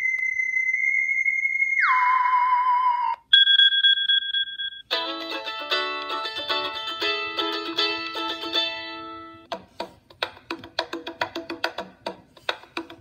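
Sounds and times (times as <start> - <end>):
electronic tone dropping in pitch: 0.0 - 3.5
short steady beep: 3.3 - 4.9
plucked-string melody: 4.9 - 9.9.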